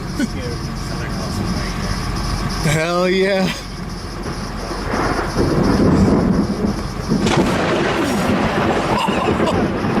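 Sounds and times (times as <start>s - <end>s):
rolling thunder: 4.1s - 10.0s
thunder crack: 4.2s - 10.0s.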